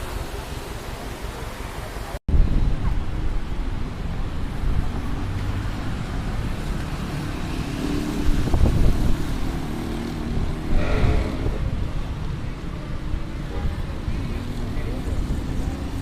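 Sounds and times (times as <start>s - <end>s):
vehicle engines passing by: 0.0s - 16.0s.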